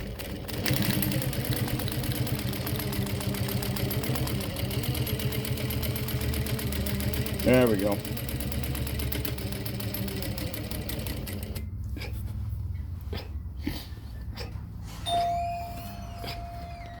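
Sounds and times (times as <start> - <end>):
sewing machine stitching leather: 0.0 - 11.7
steady ringing tone: 15.1 - 17.0.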